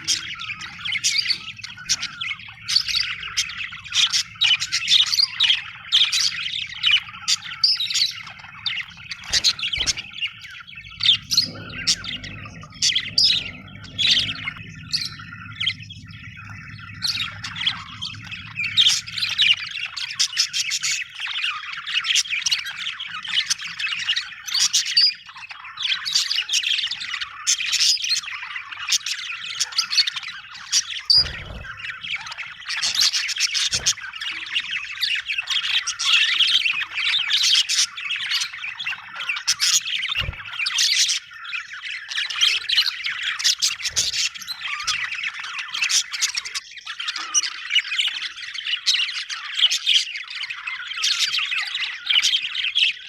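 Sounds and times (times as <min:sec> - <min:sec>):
budgerigars chirping and warbling: 0:00.0 - 0:53.0
low steady hum: 0:08.4 - 0:20.4.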